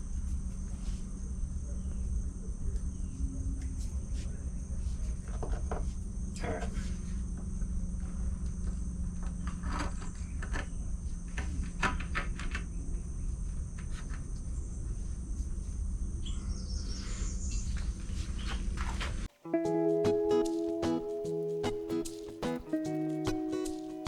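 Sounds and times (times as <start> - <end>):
bird chirp: 16.2 - 18.0
music with pitched notes: 19.5 - 24.0.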